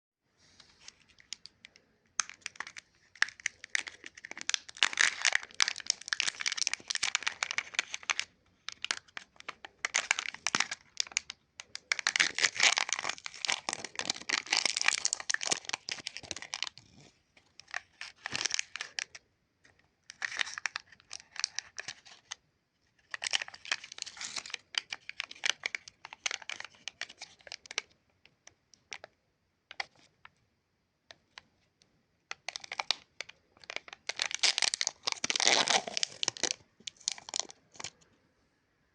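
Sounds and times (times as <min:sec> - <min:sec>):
plastic wrappers crinkling and tearing: 0:00.8 - 0:17.0, 0:17.6 - 0:19.2, 0:23.0 - 0:27.9, 0:32.3 - 0:38.0.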